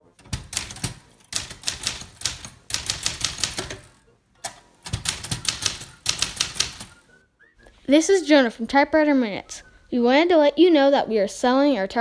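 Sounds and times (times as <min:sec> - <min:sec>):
manual typewriter typing: 0:00.0 - 0:07.1.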